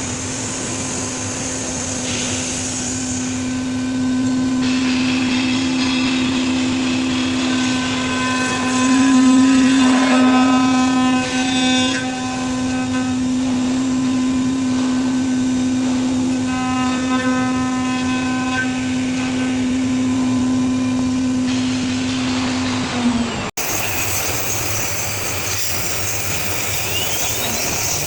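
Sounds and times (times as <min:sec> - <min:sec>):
rushing machine noise: 0:00.0 - 0:16.5, 0:18.9 - 0:28.0
router spindle whine: 0:23.4 - 0:28.0.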